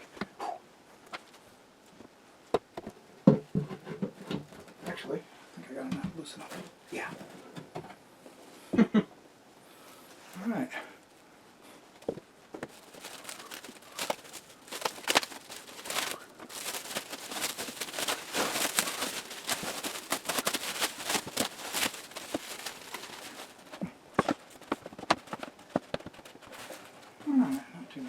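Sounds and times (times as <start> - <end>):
packing material rustling: 12.6 - 23.8, 24.4 - 26.9.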